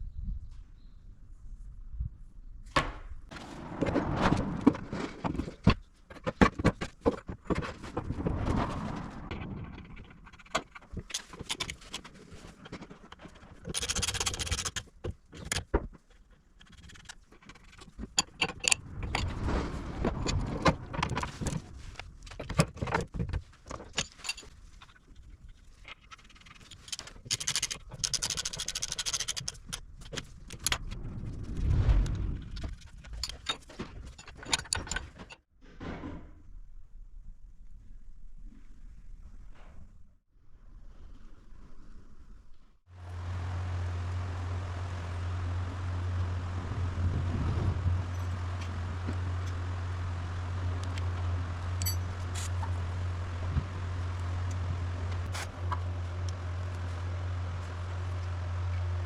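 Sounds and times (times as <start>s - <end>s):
metal tools clinking and knocking: 17.5s - 19.3s, 22.3s - 24.9s, 33.0s - 35.4s, 51.7s - 52.6s.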